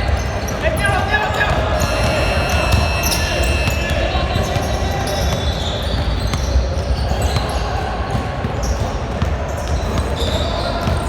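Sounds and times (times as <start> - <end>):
shoe squeaks: 0.2 - 7.7.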